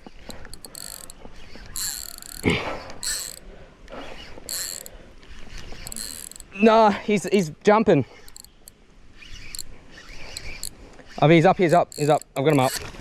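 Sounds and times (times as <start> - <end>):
fishing reel drag buzzing: 0.3 - 3.4, 4.4 - 5.0, 5.7 - 6.6, 7.2 - 7.5, 8.3 - 10.8, 11.4 - 13.0.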